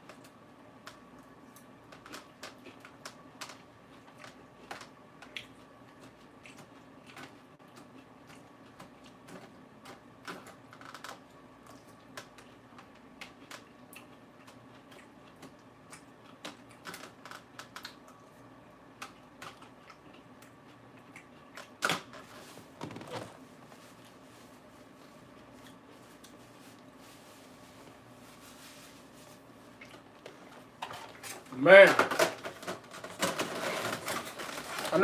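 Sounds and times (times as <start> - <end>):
lettuce being chewed: 0.0 - 21.8, 25.1 - 27.4, 28.0 - 30.6.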